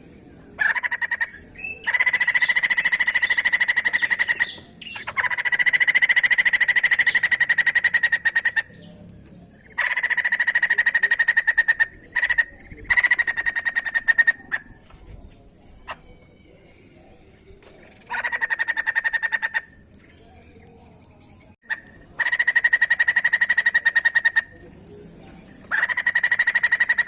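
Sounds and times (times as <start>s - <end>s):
bird rattling chatter: 22.2s - 24.5s.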